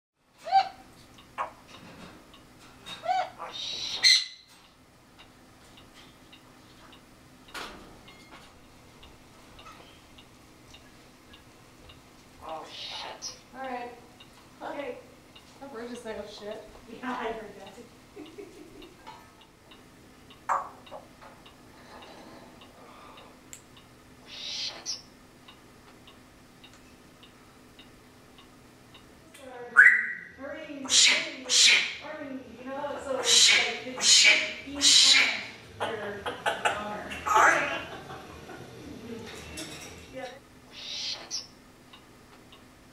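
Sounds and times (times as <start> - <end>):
parrot calling: 0.4 - 1.7, 2.9 - 4.5, 12.4 - 13.5, 20.5 - 21.1, 24.2 - 25.1, 29.7 - 32.1, 33.0 - 38.0, 40.7 - 41.6.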